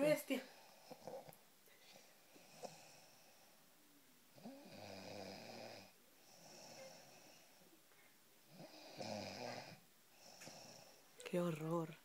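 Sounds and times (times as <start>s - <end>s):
person snoring: 4.4s - 7.5s, 8.5s - 11.0s.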